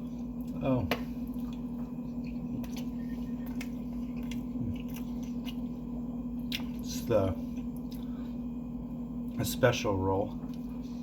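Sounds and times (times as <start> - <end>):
low hum: 0.0 - 11.0
chewing: 0.1 - 6.9.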